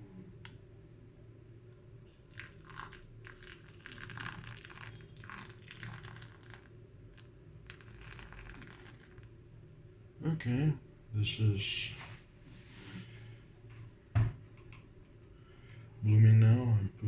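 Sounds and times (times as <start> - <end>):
coffee grounds crackling: 2.1 - 9.4
water poured onto coffee grounds: 2.2 - 9.4.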